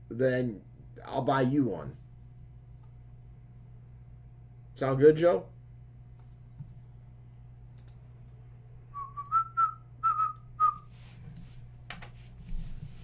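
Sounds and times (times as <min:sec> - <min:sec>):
person whistling: 0:08.9 - 0:10.9.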